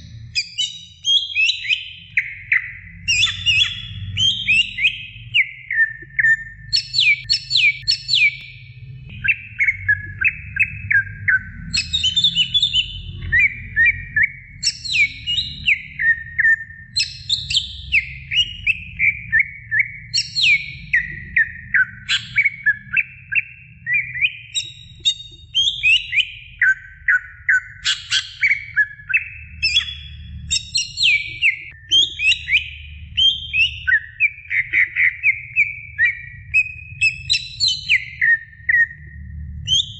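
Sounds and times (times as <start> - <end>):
bird singing chirps and whistles: 0.0 - 39.9
steady low rumble: 7.7 - 16.4.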